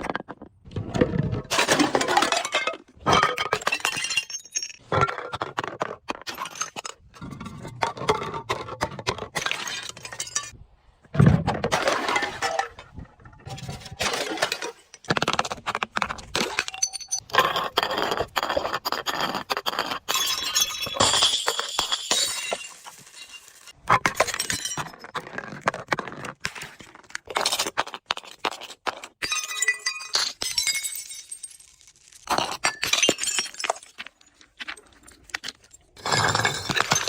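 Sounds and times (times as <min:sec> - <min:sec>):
glass breaking and crackling: 0:01.5 - 0:05.1, 0:20.1 - 0:25.1, 0:29.2 - 0:34.4
glass shards clinking: 0:16.6 - 0:17.2.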